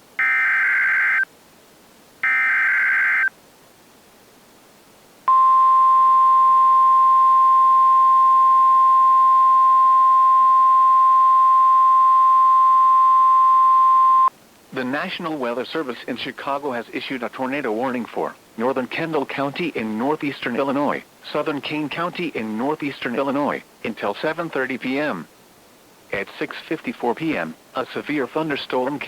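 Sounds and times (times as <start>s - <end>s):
steady single-pitch alarm tone: 0.2s - 1.2s, 2.2s - 3.3s, 5.3s - 14.3s.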